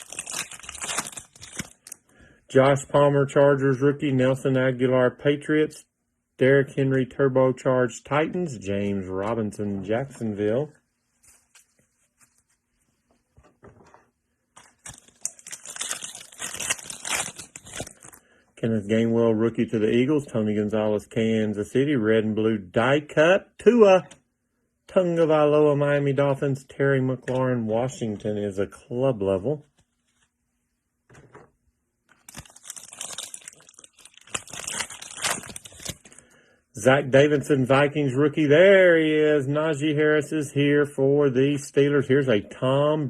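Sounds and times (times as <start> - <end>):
foil wrapper crinkling: 0.0 - 2.0, 14.6 - 18.2, 32.1 - 36.2.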